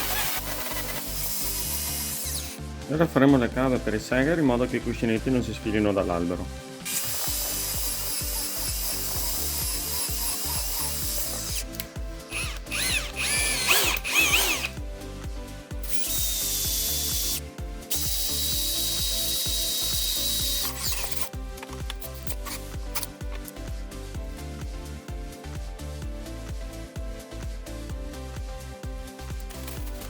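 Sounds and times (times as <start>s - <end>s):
power tool cutting steel: 0.0s - 2.6s, 6.8s - 14.8s, 15.8s - 21.3s.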